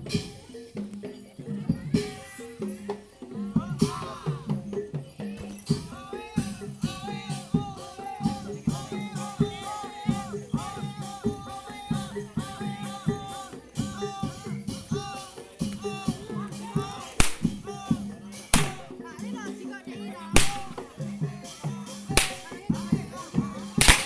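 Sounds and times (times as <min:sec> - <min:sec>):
shaken rattling percussion: 0:00.0 - 0:24.0
sharp drum strokes: 0:12.4 - 0:19.0, 0:20.4 - 0:21.0, 0:22.0 - 0:23.0, 0:23.7 - 0:24.0.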